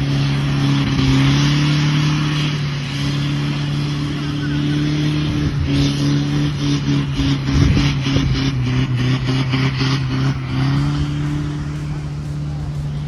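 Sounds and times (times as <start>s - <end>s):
off-road vehicle engine running: 0.0s - 13.0s.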